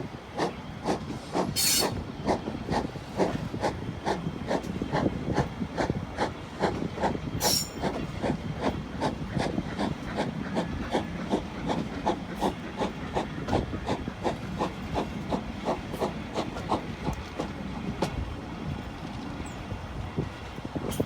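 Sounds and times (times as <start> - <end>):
steam train passing: 0.0 - 21.0.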